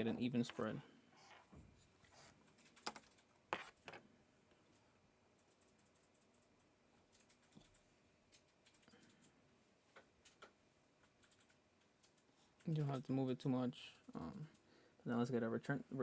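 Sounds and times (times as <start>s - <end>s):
faint clicks and taps: 5.4s - 13.2s.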